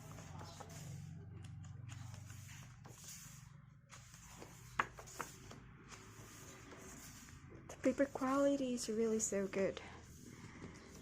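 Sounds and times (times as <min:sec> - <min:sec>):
paper pages rustling: 0:00.0 - 0:08.4.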